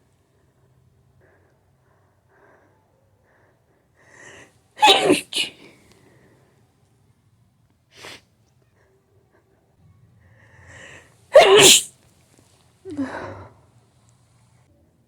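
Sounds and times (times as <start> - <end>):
person sneezing: 4.8 - 5.7, 11.3 - 11.9.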